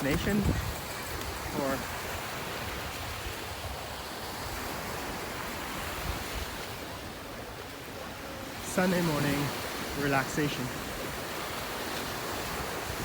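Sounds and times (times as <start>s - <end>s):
wind rumbling on microphone: 0.0s - 8.2s, 10.8s - 13.0s
surf washing onto beach: 0.0s - 13.0s.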